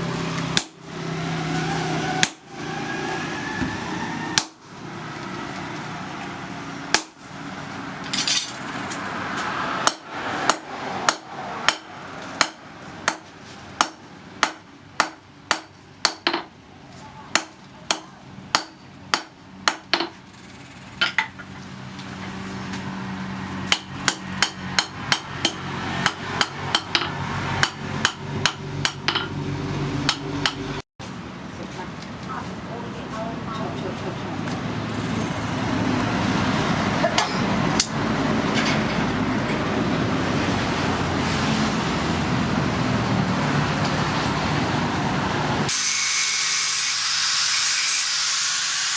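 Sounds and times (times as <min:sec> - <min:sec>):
hammer on anvil: 0:09.8 - 0:13.2, 0:17.3 - 0:20.1, 0:23.7 - 0:29.4.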